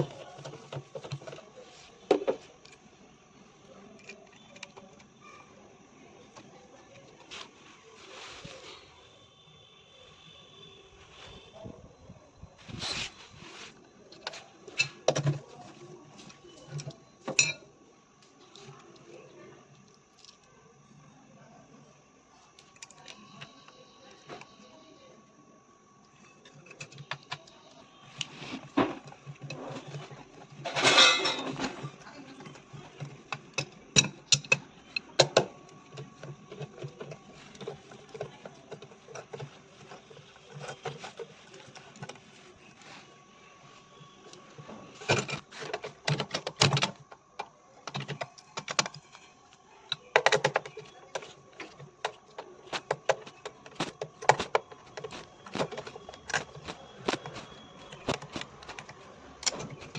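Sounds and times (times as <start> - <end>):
tools and metal parts clinking: 0.0 - 2.9, 3.9 - 5.2, 14.1 - 17.7, 19.8 - 20.5, 22.6 - 24.5, 26.1 - 43.0, 44.3 - 59.9.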